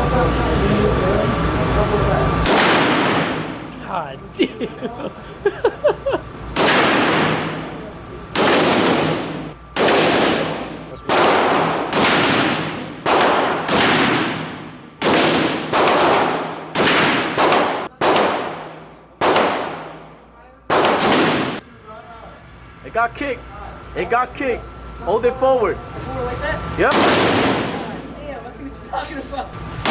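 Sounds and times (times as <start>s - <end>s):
echoing gunshots: 2.4s - 3.6s, 6.5s - 7.7s, 8.3s - 21.6s, 26.8s - 28.0s.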